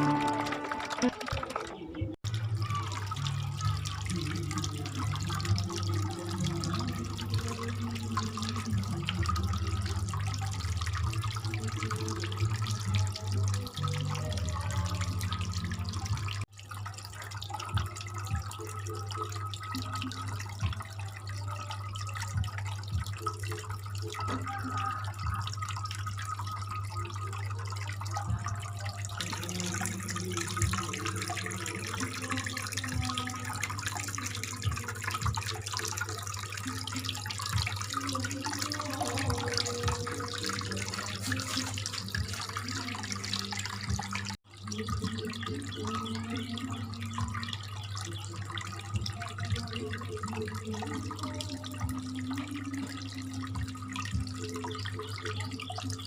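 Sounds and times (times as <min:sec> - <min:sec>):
water pump humming: 0:00.0 - 0:01.4, 0:02.3 - 0:56.0
fountain water trickling: 0:00.0 - 0:56.0.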